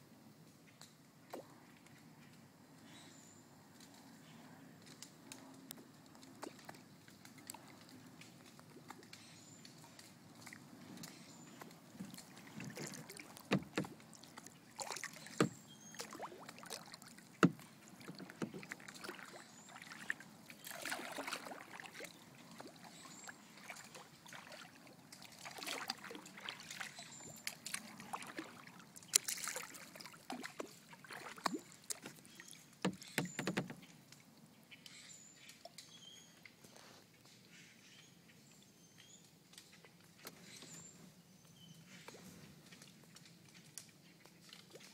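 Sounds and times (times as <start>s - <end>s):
paddle swishing through water: 5.3s - 34.1s
sharp knocks: 13.5s - 14.0s, 17.4s - 18.6s, 32.9s - 33.8s.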